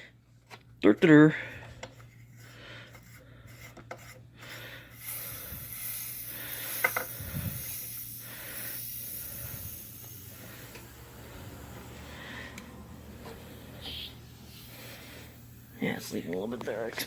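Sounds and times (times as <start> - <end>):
compressed air hissing: 4.4 - 17.0.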